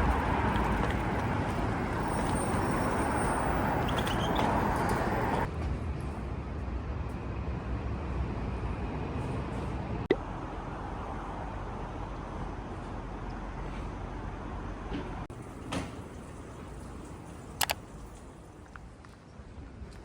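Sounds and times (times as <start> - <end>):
city traffic rumble: 0.0 - 20.0.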